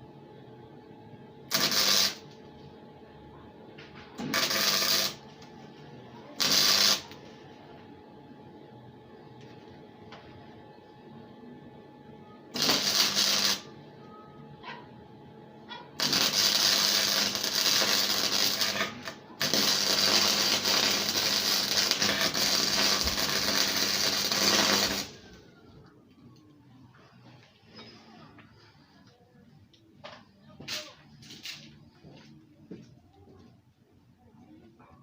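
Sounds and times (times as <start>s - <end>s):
arc welder crackling: 1.4s - 2.7s, 4.2s - 5.8s, 6.4s - 7.4s, 12.5s - 13.8s, 15.7s - 25.5s.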